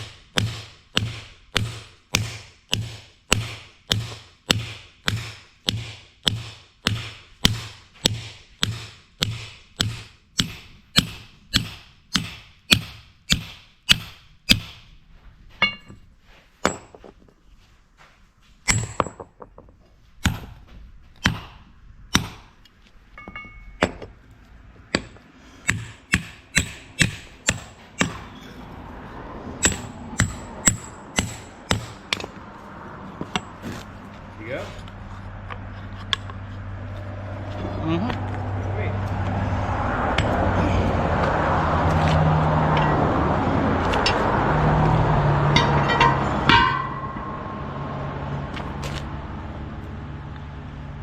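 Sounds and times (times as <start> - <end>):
hammer striking metal: 0.0 - 14.9, 15.6 - 16.0, 18.6 - 19.3, 23.2 - 24.1, 24.9 - 28.4, 29.6 - 32.4, 42.6 - 48.6
metallic ringing: 15.6 - 17.0, 23.1 - 24.0, 42.7 - 44.3, 45.4 - 48.5.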